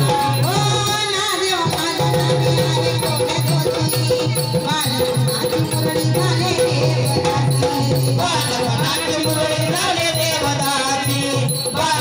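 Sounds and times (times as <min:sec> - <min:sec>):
drum beat: 0:00.0 - 0:12.0
shaken rattling percussion: 0:00.0 - 0:12.0.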